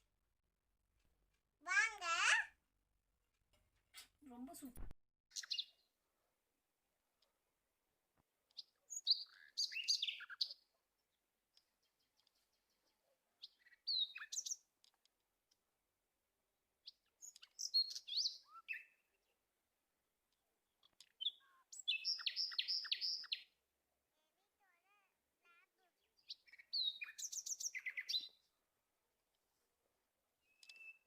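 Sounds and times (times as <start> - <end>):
birds chirping: 5.3 - 6.0, 8.4 - 15.1, 16.8 - 19.4, 20.3 - 23.6, 24.3 - 28.7, 30.4 - 31.0.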